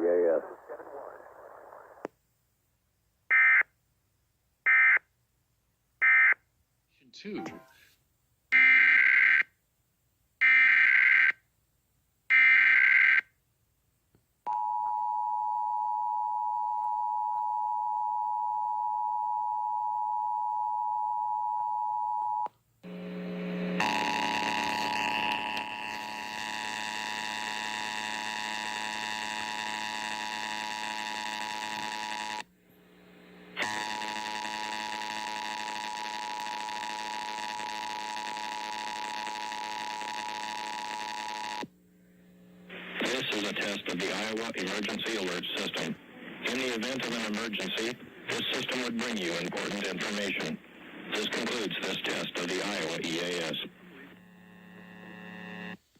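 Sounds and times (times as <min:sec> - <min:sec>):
harsh buzzy steady tone: 0:22.8 - 0:55.9.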